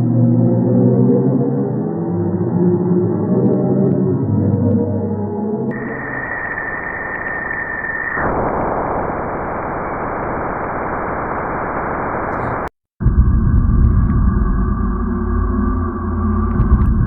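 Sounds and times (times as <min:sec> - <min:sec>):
dense static hiss: 0:05.7 - 0:12.7
high steady tone: 0:05.7 - 0:12.7
low droning hum: 0:12.4 - 0:17.0.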